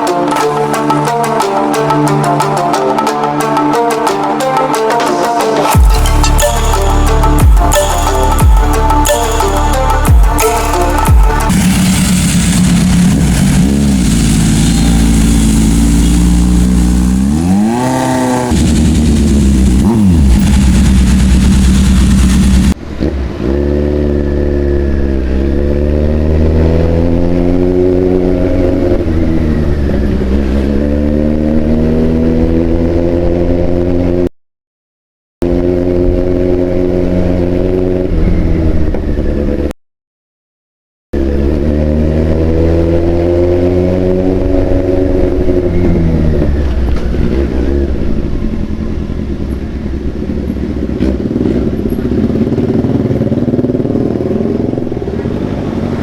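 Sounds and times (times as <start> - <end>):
motorcycle engine revving: 9.7 - 34.3, 35.4 - 39.7, 41.2 - 56.0.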